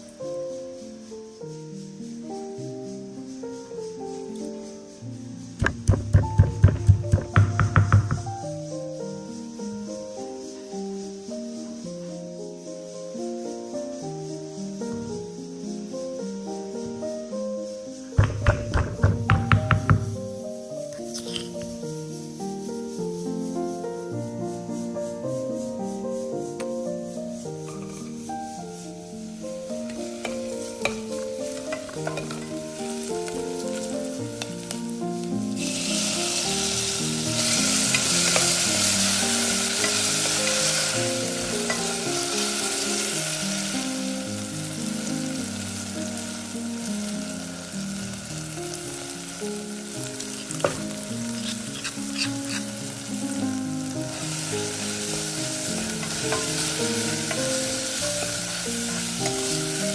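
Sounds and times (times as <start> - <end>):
food sizzling in hot oil: 0.0 - 13.6, 14.2 - 23.7, 25.3 - 59.9
soft background music: 0.0 - 59.9
spoon clicking against pan: 5.6 - 8.3, 30.2 - 32.6, 56.0 - 57.6.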